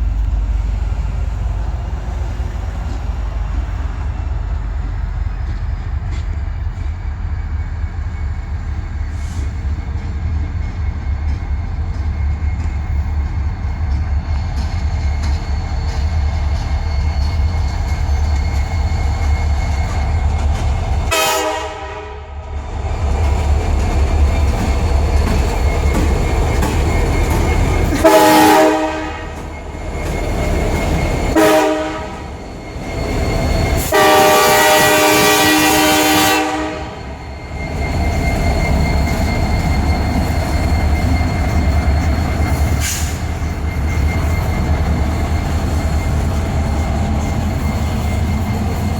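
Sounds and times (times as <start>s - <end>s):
diesel locomotive rumble: 0.0s - 48.9s
locomotive air horn blasts: 21.1s - 22.4s, 27.9s - 29.4s, 31.4s - 32.2s, 33.8s - 37.0s.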